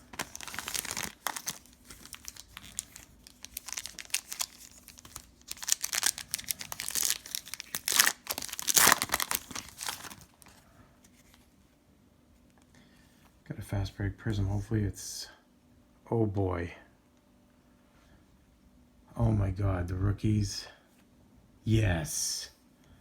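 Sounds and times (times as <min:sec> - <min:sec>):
wrapper tearing and crinkling: 0:00.0 - 0:10.6.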